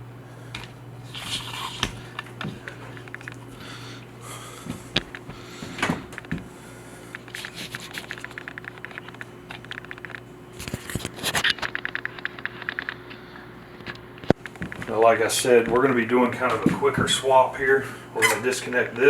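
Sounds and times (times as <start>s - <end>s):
rapid clicks: 7.1s - 10.3s.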